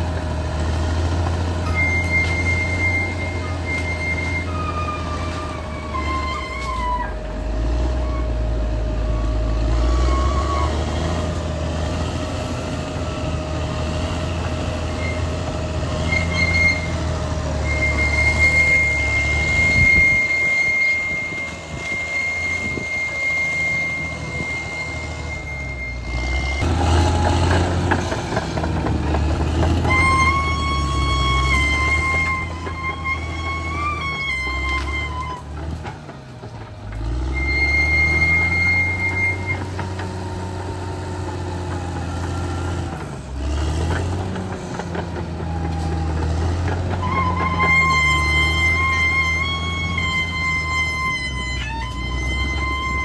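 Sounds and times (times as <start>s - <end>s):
high-pitched squeal: 0.0s - 36.0s, 36.9s - 53.0s
bulldozer diesel engine working: 0.0s - 53.0s.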